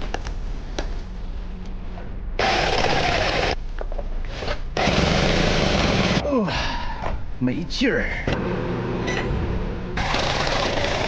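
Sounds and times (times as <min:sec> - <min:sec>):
power tool motor bursts: 0:02.4 - 0:03.6, 0:04.4 - 0:06.2, 0:10.0 - 0:11.0.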